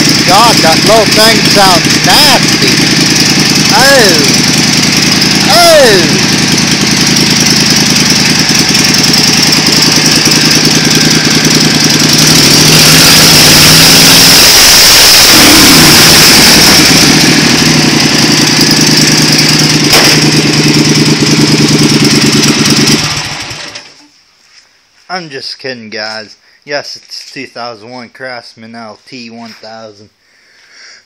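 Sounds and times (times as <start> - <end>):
high whine: 0.0 - 21.8
lawn mower engine running rough: 0.0 - 24.0.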